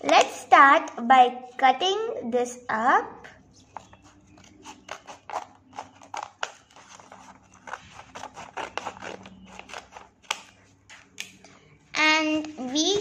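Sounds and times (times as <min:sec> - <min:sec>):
scissors snipping paper: 0:03.8 - 0:10.5
paper crinkling and rustling: 0:03.8 - 0:11.1.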